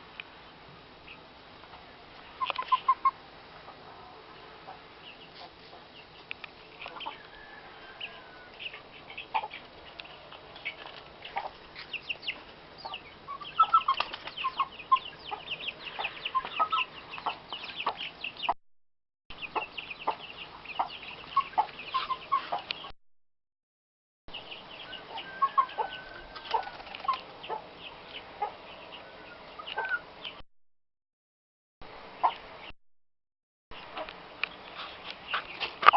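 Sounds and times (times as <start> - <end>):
chickens clucking: 1.0 - 18.6, 19.4 - 22.9, 24.5 - 30.4, 32.2 - 32.7, 33.8 - 35.9
chicks peeping: 1.0 - 18.6, 19.4 - 22.9, 24.4 - 30.4, 32.2 - 32.7.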